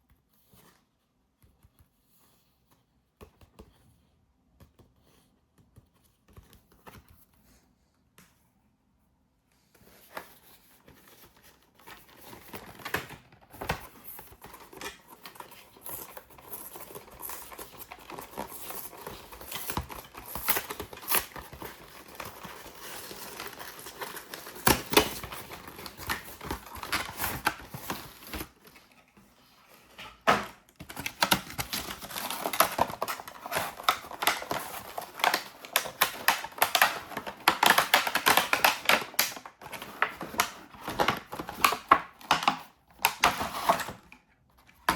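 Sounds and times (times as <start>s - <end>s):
packaging crinkling: 11.8s - 28.8s, 30.3s - 43.8s
packaging clicks and taps: 30.3s - 43.4s.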